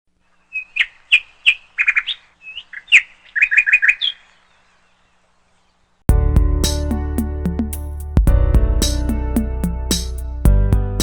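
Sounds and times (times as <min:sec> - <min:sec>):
songbird chirping: 0:00.1 - 0:06.1.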